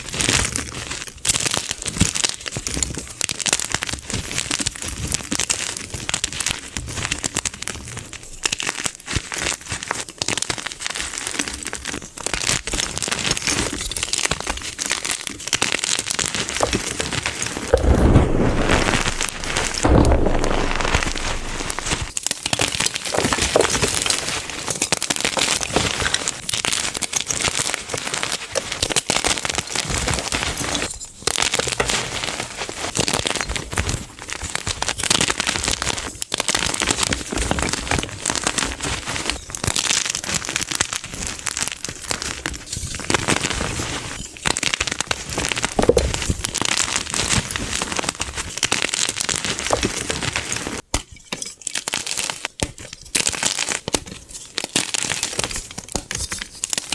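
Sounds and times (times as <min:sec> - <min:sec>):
chalk being crushed: 0:12.6 - 0:50.8.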